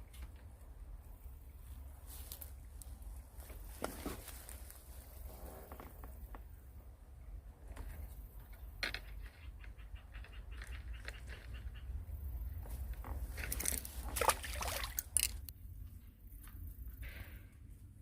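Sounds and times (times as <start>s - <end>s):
rustling and clicking handling noises: 2.1s - 6.5s.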